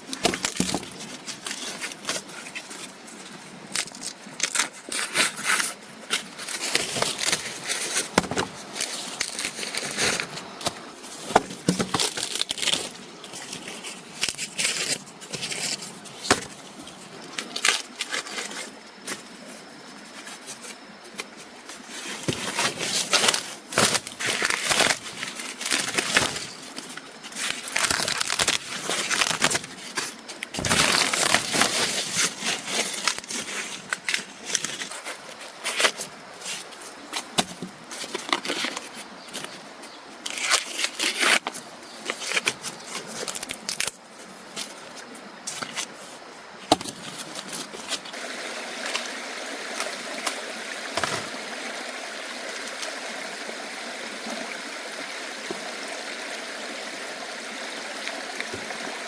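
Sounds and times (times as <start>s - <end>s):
dry plant material crackling: 11.6s - 16.3s, 22.6s - 35.0s.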